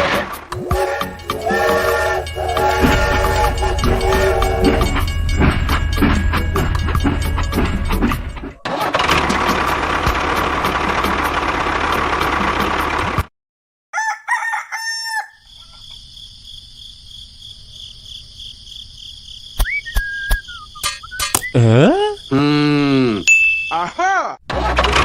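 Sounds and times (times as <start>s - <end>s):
rising whistle-like glide: 0.5s - 8.6s
steady high tones: 0.5s - 8.6s
rooster crowing: 13.9s - 15.8s.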